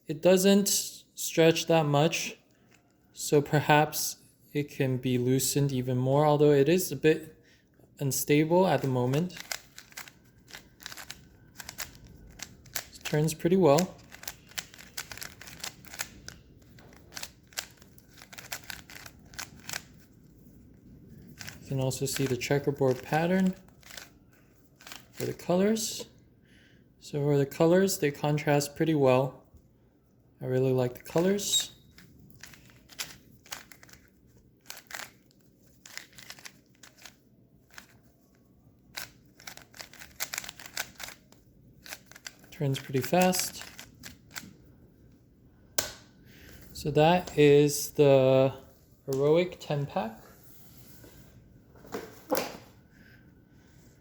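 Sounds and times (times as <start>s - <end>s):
speed cube clicking: 9.3s - 20.0s, 23.8s - 24.1s, 32.4s - 35.2s, 35.8s - 38.0s, 38.9s - 42.5s, 43.1s - 44.5s.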